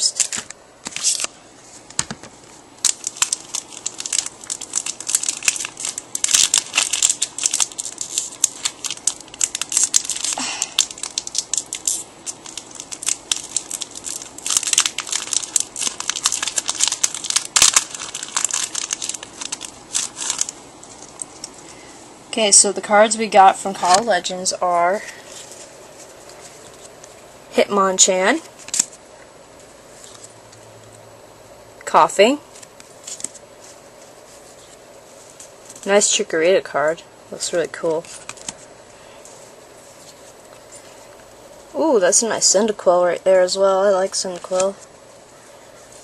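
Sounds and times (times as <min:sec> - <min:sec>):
plastic wrapper crinkling and tearing: 0:00.0 - 0:01.4, 0:02.8 - 0:21.9, 0:25.0 - 0:27.2, 0:28.1 - 0:29.0, 0:32.5 - 0:36.2, 0:37.8 - 0:42.5, 0:43.9 - 0:46.0.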